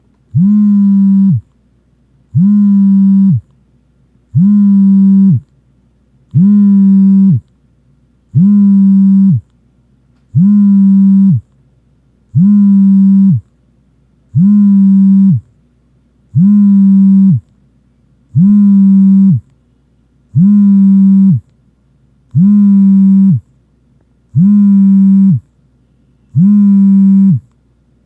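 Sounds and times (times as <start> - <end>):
phone vibrating buzz: 0.3 - 1.5, 2.3 - 3.5, 4.3 - 5.5, 6.3 - 7.5, 8.3 - 9.5, 10.3 - 11.5, 12.3 - 13.5, 14.3 - 15.6, 16.3 - 17.5, 18.3 - 19.5, 20.3 - 21.5, 22.3 - 23.5, 24.3 - 27.6.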